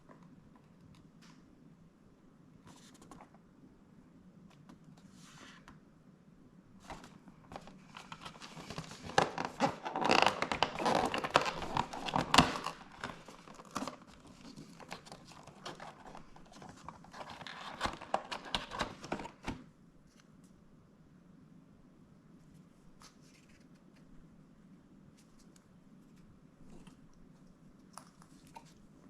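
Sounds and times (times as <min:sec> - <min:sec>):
packaging crinkling and tearing: 0:07.5 - 0:19.6.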